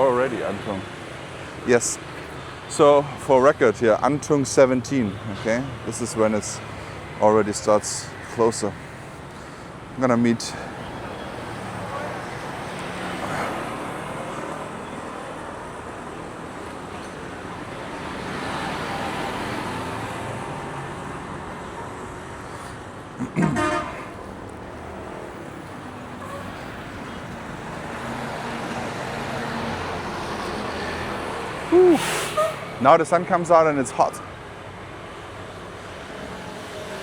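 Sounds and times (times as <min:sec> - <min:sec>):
street traffic passing: 0:00.0 - 0:37.0
vehicle horn double honk: 0:23.4 - 0:24.2.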